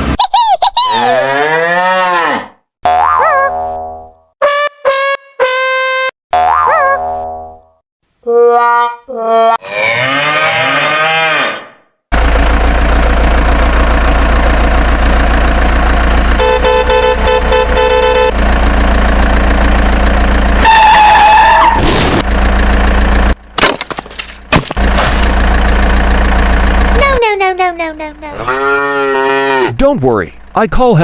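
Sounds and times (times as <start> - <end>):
horn honking: 4.4 - 6.1, 16.3 - 18.6
vehicle engine humming: 12.1 - 28.6, 30.3 - 30.6.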